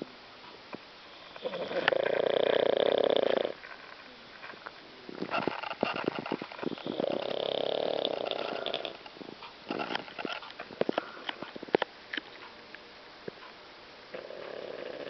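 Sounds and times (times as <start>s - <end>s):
cat snoring: 1.2s - 3.6s, 6.6s - 9.0s, 14.1s - 15.0s.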